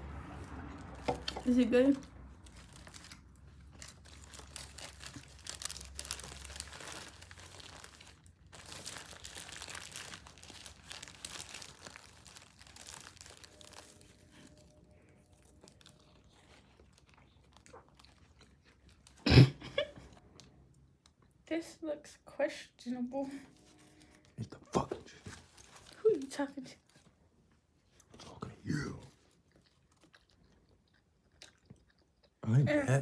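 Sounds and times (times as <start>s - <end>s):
wrapper crinkling: 0.8s - 19.2s, 25.2s - 27.1s
person chewing sandwich: 2.3s - 21.4s, 27.7s - 32.4s.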